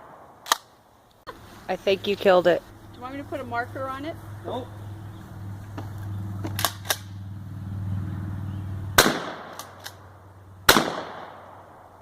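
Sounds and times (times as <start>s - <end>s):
sharp clicks: 5.7s - 7.2s, 9.4s - 10.0s
shotgun blast: 9.0s - 9.8s, 10.7s - 11.8s.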